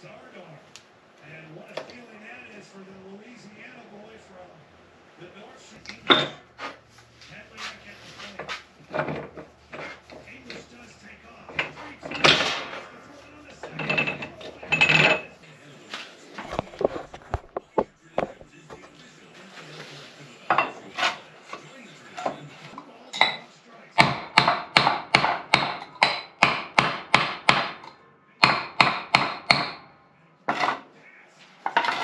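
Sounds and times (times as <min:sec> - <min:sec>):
hammer strikes: 0:24.0 - 0:29.9.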